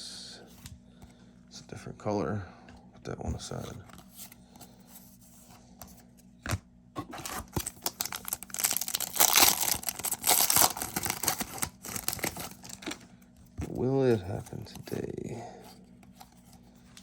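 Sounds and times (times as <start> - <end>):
plastic wrapper tearing and crumpling: 7.2 - 13.0.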